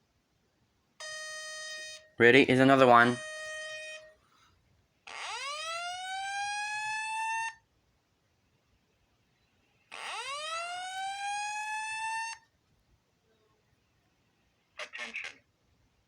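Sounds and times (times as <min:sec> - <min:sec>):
rising whoop alarm tone: 0:10.0 - 0:12.4.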